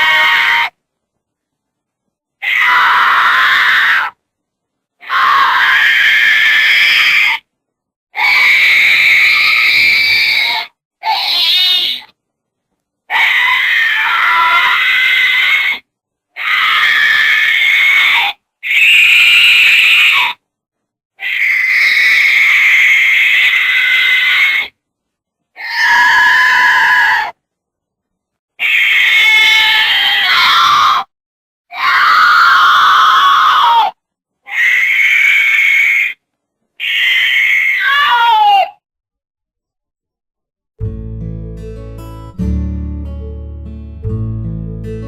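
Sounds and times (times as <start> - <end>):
goats screaming: 0.0 - 0.8, 2.4 - 4.2, 5.0 - 7.4, 8.2 - 12.1, 13.1 - 15.8, 16.4 - 20.4, 21.2 - 24.8, 25.6 - 27.4, 28.6 - 31.1, 31.7 - 36.2, 36.8 - 38.8.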